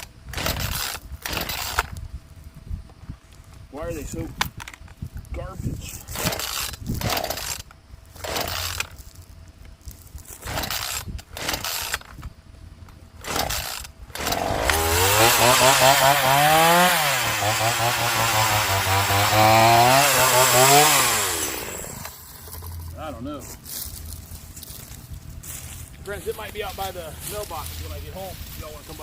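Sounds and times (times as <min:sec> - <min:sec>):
chainsaw engine running: 0:06.1 - 0:09.0, 0:10.3 - 0:12.1, 0:13.2 - 0:23.1.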